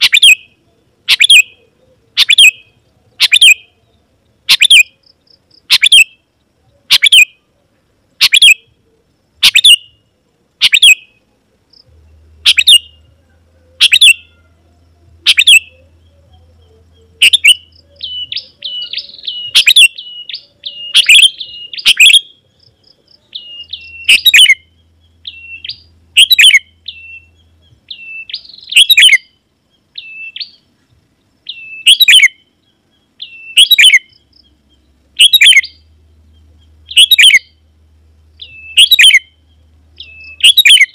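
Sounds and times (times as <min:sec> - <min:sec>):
bird chattering notes: 0:00.0 - 0:00.5, 0:01.1 - 0:03.8, 0:04.4 - 0:06.2, 0:06.9 - 0:07.3, 0:08.2 - 0:08.6, 0:09.4 - 0:10.0, 0:10.6 - 0:11.2, 0:11.8 - 0:13.2, 0:13.8 - 0:14.4, 0:15.2 - 0:16.2, 0:16.9 - 0:29.2, 0:31.5 - 0:32.4, 0:33.2 - 0:34.6, 0:35.2 - 0:35.8, 0:36.7 - 0:37.6, 0:38.4 - 0:39.4, 0:40.0 - 0:40.9
bulbul calling: 0:00.0 - 0:07.6, 0:08.2 - 0:40.9.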